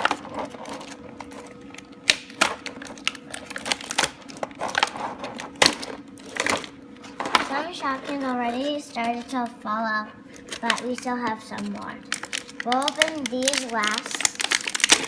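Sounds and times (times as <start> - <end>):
plastic toy figures clicking: 12.2 - 15.0.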